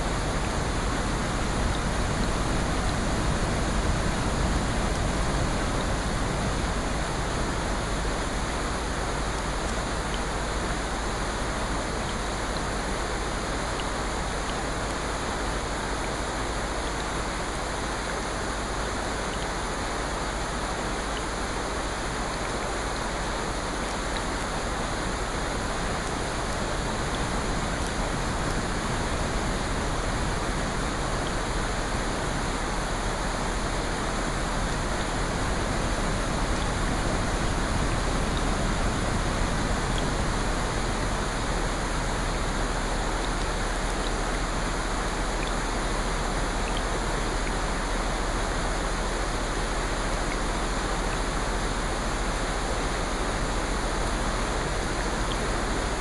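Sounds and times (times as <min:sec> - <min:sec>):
steady rain: 0:00.0 - 0:56.0
faint ticks: 0:43.1 - 0:45.6, 0:46.5 - 0:47.6.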